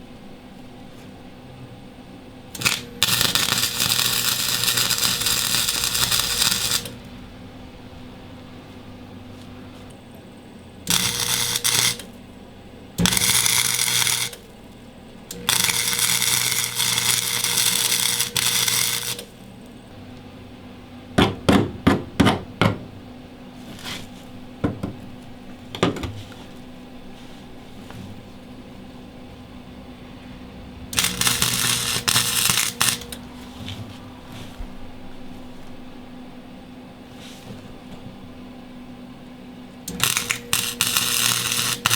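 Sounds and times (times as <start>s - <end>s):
welder arc crackling: 2.5s - 10.0s, 10.8s - 12.2s, 13.0s - 14.7s, 15.3s - 19.9s, 25.5s - 34.5s, 39.9s - 41.9s.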